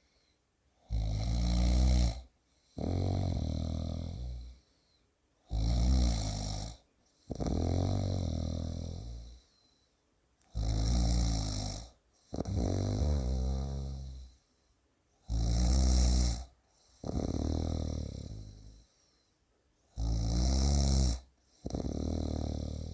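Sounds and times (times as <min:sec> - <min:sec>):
person snoring: 0:00.8 - 0:04.6, 0:05.5 - 0:09.4, 0:10.5 - 0:14.4, 0:15.2 - 0:18.9, 0:19.9 - 0:22.9.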